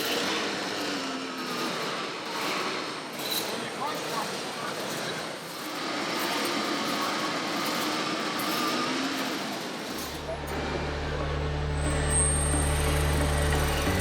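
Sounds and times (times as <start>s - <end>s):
busy indoor noise: 0.0s - 14.0s
steady low drone: 10.2s - 14.0s.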